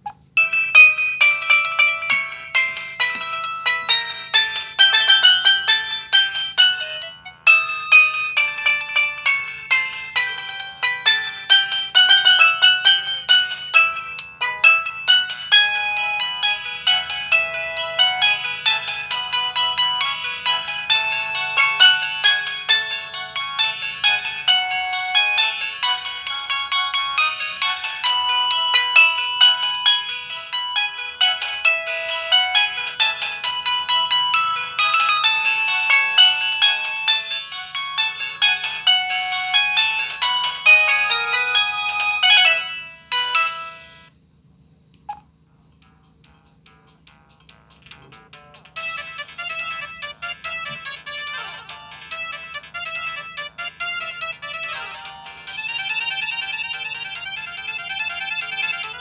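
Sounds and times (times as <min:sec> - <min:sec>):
phone ringtone melody: 0:00.0 - 0:44.1, 0:47.1 - 0:59.0.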